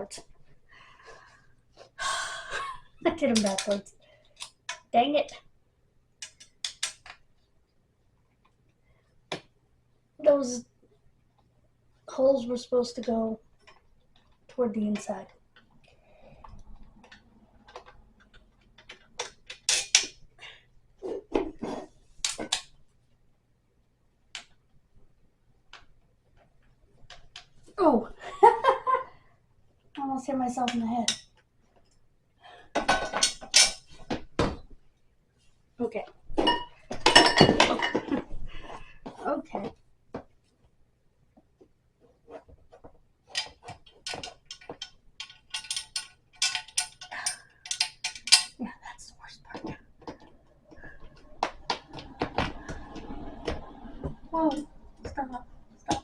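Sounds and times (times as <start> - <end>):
furniture parts clicking and rattling: 16.8 - 20.3, 32.7 - 34.8, 42.3 - 48.6.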